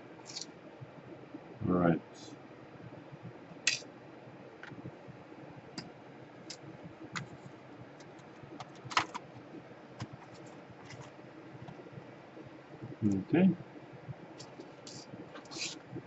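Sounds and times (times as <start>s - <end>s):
tools and plastic parts clicking: 8.0s - 9.2s.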